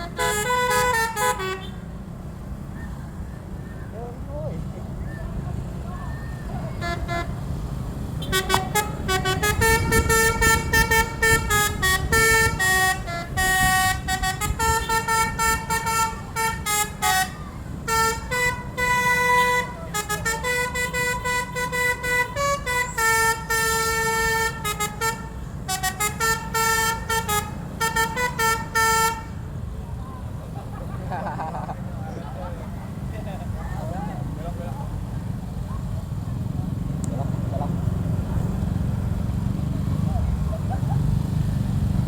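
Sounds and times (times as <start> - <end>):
bus horn playing a tune: 0.0 - 2.1, 6.2 - 29.8.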